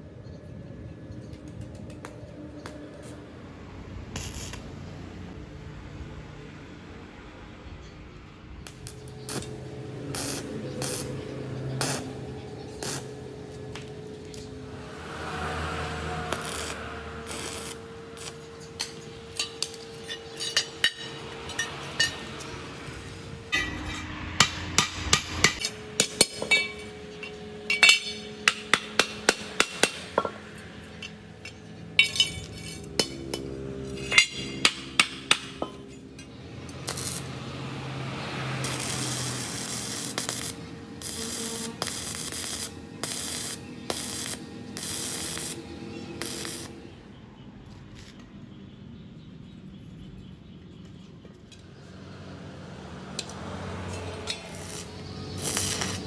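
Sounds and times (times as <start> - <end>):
hammer striking metal: 15.9 - 37.4.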